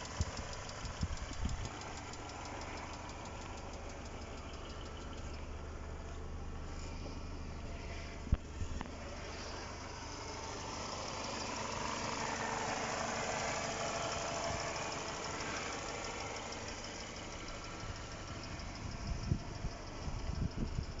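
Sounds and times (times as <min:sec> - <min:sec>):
fast valve lifter ticking: 0:00.0 - 0:05.0
car engine idling: 0:00.0 - 0:21.0.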